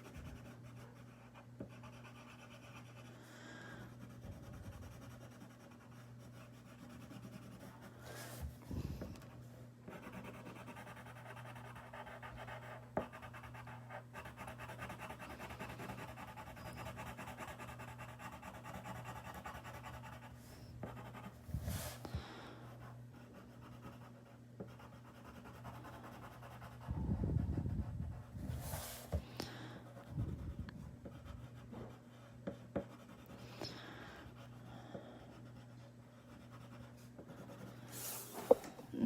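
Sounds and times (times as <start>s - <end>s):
low electrical hum: 0.0s - 39.0s
drawing tool scratching on paper: 9.9s - 22.0s.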